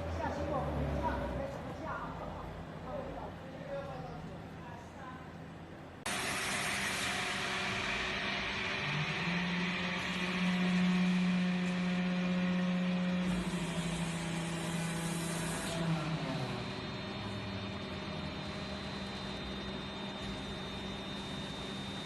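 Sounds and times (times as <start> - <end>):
machine hum: 0.0 - 22.0
pitched machine drone: 6.0 - 22.0.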